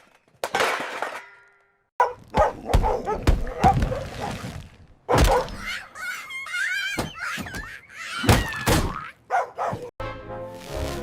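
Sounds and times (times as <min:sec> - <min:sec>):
high squeaky cry: 0:05.6 - 0:09.2
brass cartoon music: 0:10.0 - 0:11.0.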